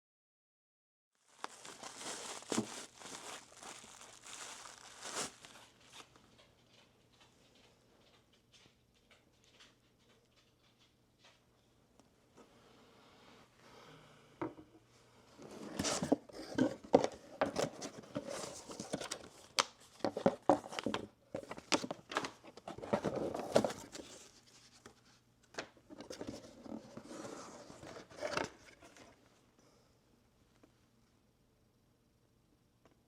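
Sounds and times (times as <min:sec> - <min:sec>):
packaging rustling and tearing: 0:01.2 - 0:06.2.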